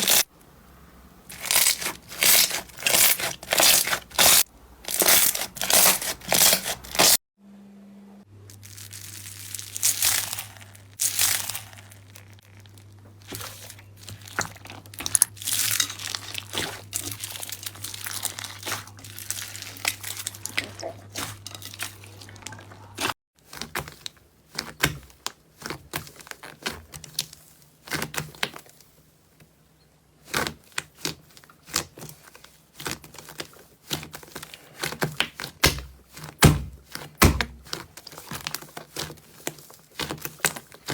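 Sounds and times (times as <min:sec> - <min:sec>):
slime squished by hand: 0:08.5 - 0:23.8.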